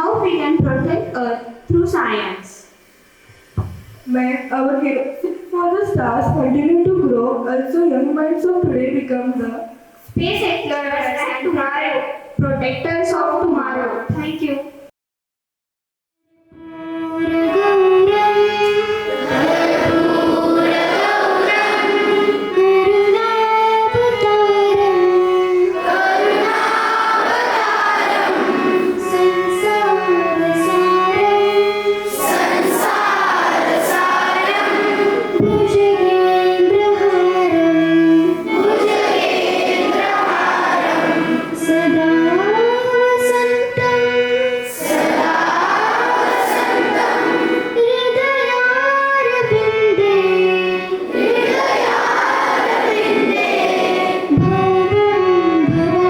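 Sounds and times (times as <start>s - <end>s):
instrumental accompaniment: 2.8s - 4.2s, 16.3s - 56.0s
children singing together: 17.3s - 56.0s.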